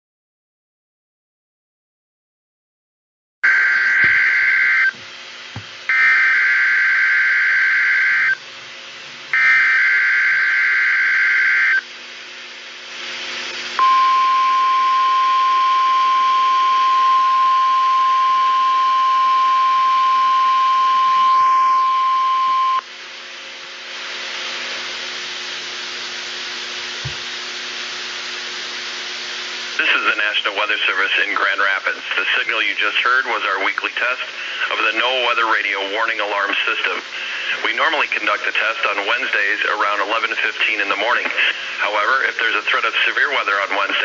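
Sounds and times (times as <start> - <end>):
steady warning alarm tone: 3.4 - 5.0, 5.9 - 8.4, 9.3 - 11.8, 13.8 - 22.8
radio static hiss: 3.4 - 13.8, 22.5 - 44.0.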